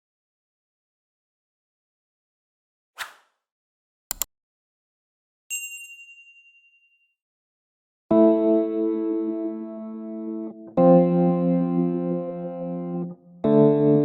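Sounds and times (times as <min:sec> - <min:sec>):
bright ding: 0:05.5 - 0:07.0
synthesized music chord: 0:08.1 - 0:14.0.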